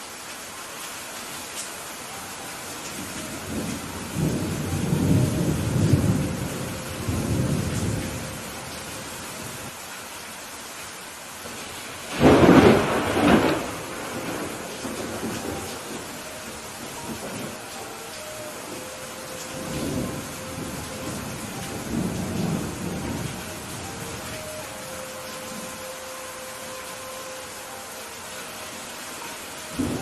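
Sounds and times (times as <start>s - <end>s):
steady rain: 0.0s - 30.0s
rolling thunder rumble: 3.2s - 8.8s, 12.1s - 17.7s, 18.6s - 24.4s, 29.7s - 30.0s
loud sharp thunderclap: 12.1s - 15.6s.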